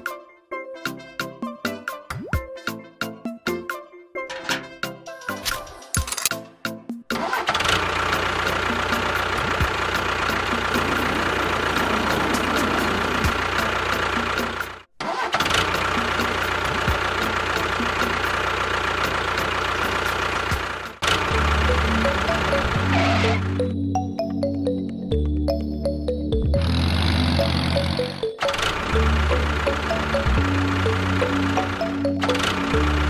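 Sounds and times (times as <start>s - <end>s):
music: 0.0s - 7.5s, 8.1s - 14.8s, 15.7s - 33.0s
motor running with whine: 8.0s - 14.9s, 16.0s - 23.7s, 26.6s - 33.0s.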